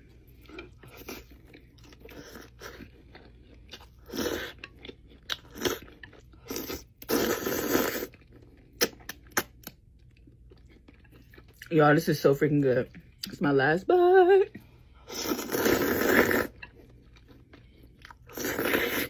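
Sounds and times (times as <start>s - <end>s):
crunching and chewing chicken wings: 0.1s - 11.7s.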